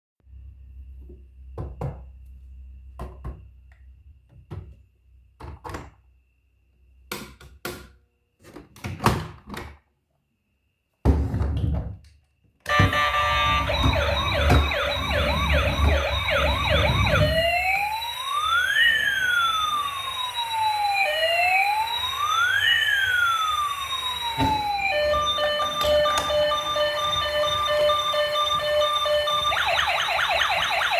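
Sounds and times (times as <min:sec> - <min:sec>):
toy siren yelping and wailing: 0:12.7 - 0:30.9.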